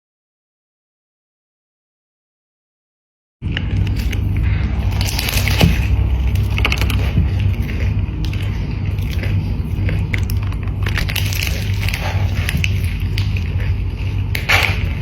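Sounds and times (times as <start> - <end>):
person chewing crunchy food: 3.4 - 15.0
steady low hum: 3.4 - 15.0.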